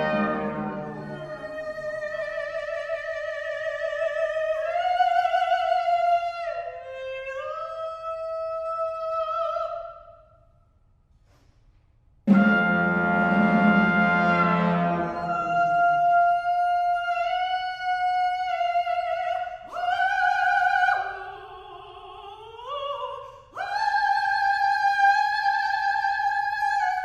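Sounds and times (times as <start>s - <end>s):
chamber ensemble loud chord: 0.0s - 1.5s
brass chord: 0.0s - 1.6s, 12.3s - 15.8s
solo classical voice singing: 0.0s - 10.0s, 14.1s - 27.0s.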